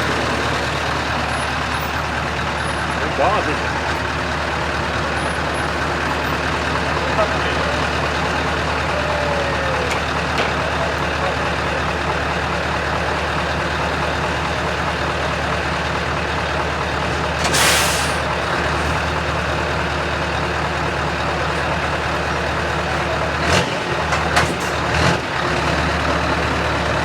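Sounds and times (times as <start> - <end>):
truck engine running: 0.0 - 27.0.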